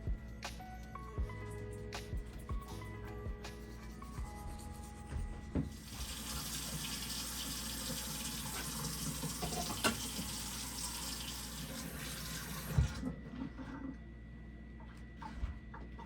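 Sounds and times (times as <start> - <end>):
tap water running into sink: 5.7 - 13.0.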